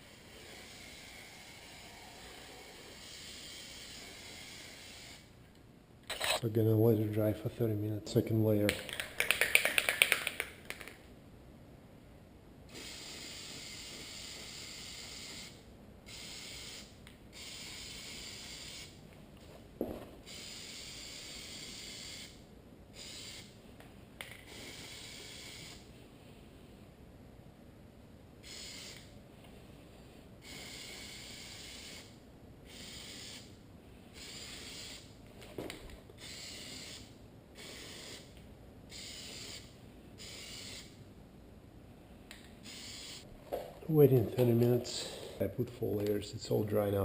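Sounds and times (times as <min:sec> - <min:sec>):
spray can hissing: 0:12.7 - 0:18.9, 0:20.3 - 0:22.4, 0:28.4 - 0:29.1, 0:30.4 - 0:32.1, 0:34.2 - 0:35.1, 0:36.2 - 0:38.3, 0:38.9 - 0:40.9, 0:42.6 - 0:43.3.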